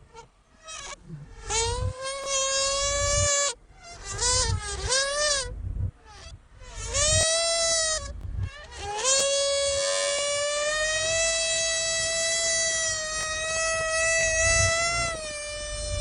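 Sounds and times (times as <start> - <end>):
balloon squealing as air escapes: 6.9 - 16.0.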